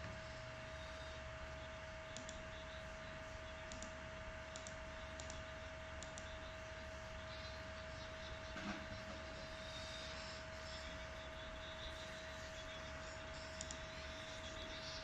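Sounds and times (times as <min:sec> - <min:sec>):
electrical hum tone: 0:00.0 - 0:15.0
faint sharp clicks: 0:02.1 - 0:02.4, 0:03.7 - 0:06.4, 0:13.5 - 0:13.8.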